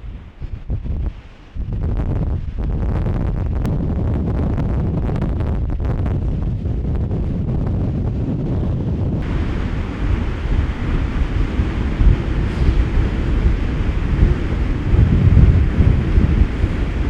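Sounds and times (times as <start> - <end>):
wind buffeting microphone: 0.0 - 17.0
bright steady hiss: 9.2 - 17.0
ocean surf: 9.2 - 17.0.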